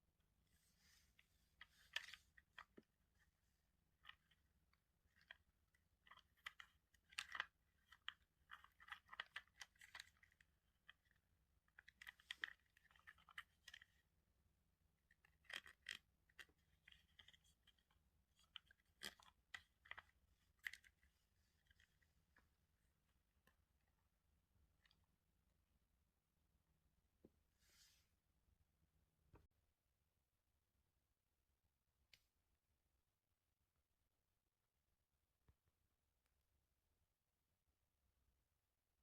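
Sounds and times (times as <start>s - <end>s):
plastic toy pieces clicking: 6.0s - 11.0s.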